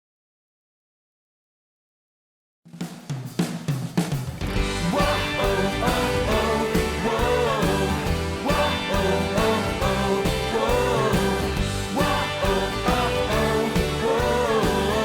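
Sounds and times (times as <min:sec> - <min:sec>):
drum lead-in: 0:02.7 - 0:15.0
pop band playing: 0:04.4 - 0:15.0.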